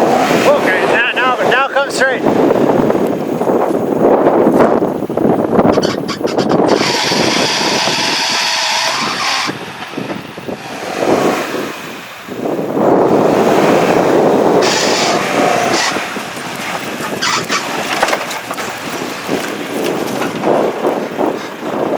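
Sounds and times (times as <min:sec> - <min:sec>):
off-road vehicle engine: 0:04.6 - 0:21.9
knocks and scrapes: 0:05.7 - 0:11.8, 0:14.6 - 0:20.6.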